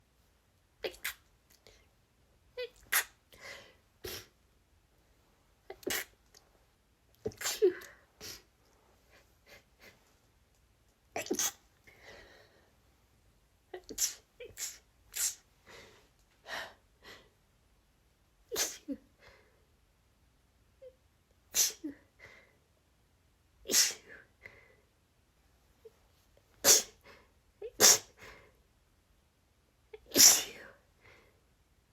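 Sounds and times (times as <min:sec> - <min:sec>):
woman's stifled sneezes: 0:02.6 - 0:03.2, 0:05.7 - 0:06.2, 0:07.3 - 0:08.5, 0:11.2 - 0:11.7, 0:13.8 - 0:15.5, 0:18.5 - 0:19.0, 0:21.5 - 0:22.0, 0:23.7 - 0:24.2, 0:26.6 - 0:27.0, 0:27.7 - 0:28.2, 0:30.0 - 0:30.8.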